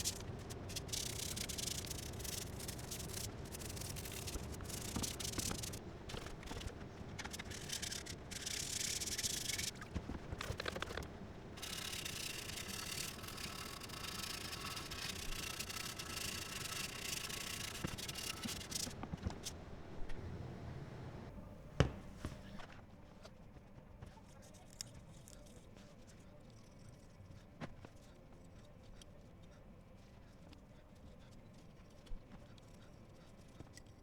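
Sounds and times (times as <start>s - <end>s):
brush scrubbing a surface: 0.0s - 9.8s, 11.6s - 19.0s.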